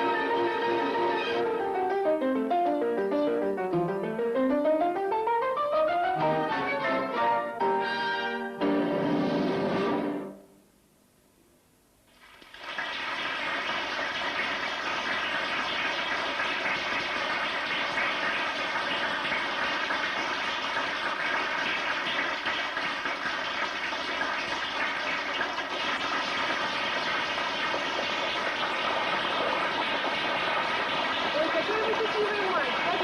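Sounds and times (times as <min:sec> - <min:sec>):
eggs sizzling in a frying pan: 0:12.1 - 0:33.0.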